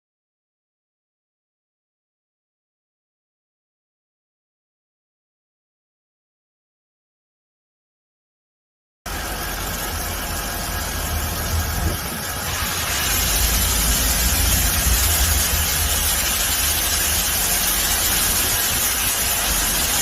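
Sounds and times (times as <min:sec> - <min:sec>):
car engine rumbling: 0:09.2 - 0:18.8
broad hiss: 0:10.8 - 0:20.0.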